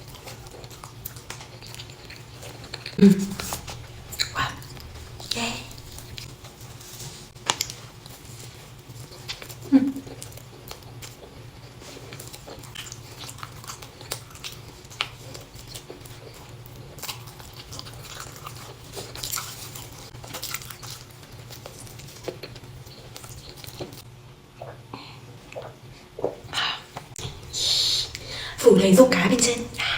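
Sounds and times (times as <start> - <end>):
steady low hum: 0.0 - 12.8, 26.3 - 29.9
chewing and crunching pastry: 0.0 - 29.9.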